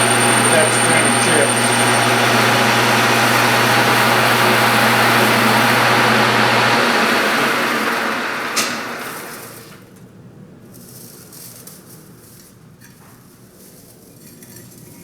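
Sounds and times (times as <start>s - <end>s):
hissing cutting noise: 0.0s - 9.8s
lathe motor hum: 0.0s - 9.8s.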